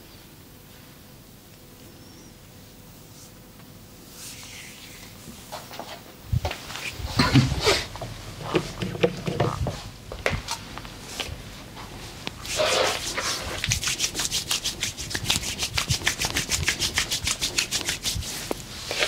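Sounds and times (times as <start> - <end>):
hands rubbing skin: 12.4 - 19.0.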